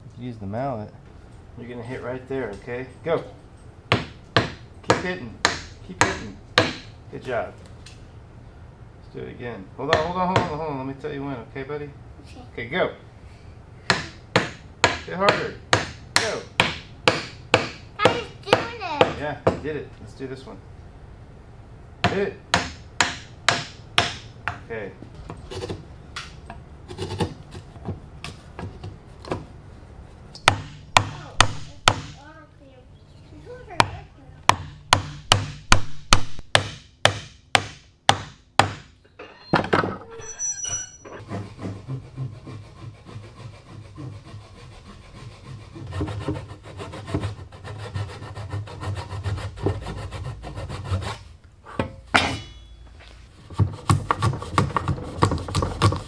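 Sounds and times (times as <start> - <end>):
hand tool scraping wood: 25.4 - 25.8, 41.1 - 52.0, 53.1 - 56.0
mallet knocking on wood: 30.5 - 32.2.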